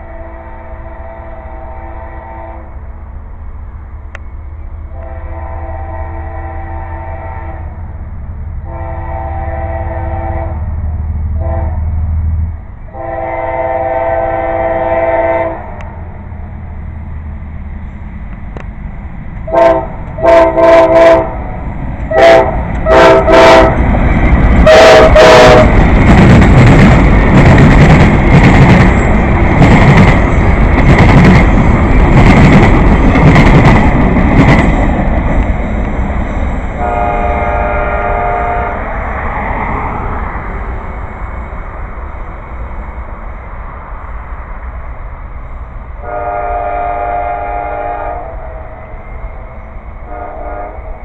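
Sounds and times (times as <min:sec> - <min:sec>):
locomotive horn blasts: 0:00.0 - 0:02.8, 0:04.9 - 0:07.8, 0:08.6 - 0:10.7, 0:11.4 - 0:11.9, 0:12.9 - 0:15.8, 0:19.5 - 0:21.5, 0:22.1 - 0:23.8, 0:24.6 - 0:25.8, 0:36.8 - 0:38.9, 0:46.0 - 0:51.0
train rumbling past: 0:00.0 - 0:51.0
train wheels clattering: 0:21.6 - 0:37.4.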